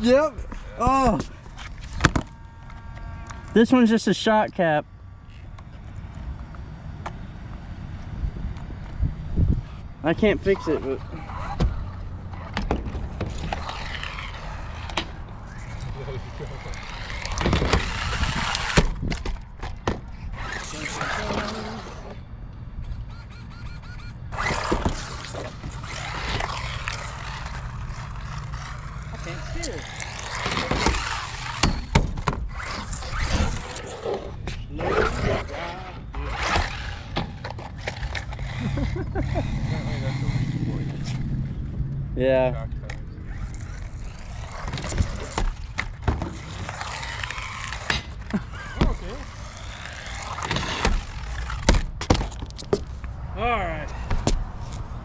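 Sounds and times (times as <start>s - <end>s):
electric toy car driving on concrete: 0.0s - 55.0s
wind on microphone: 8.2s - 10.0s.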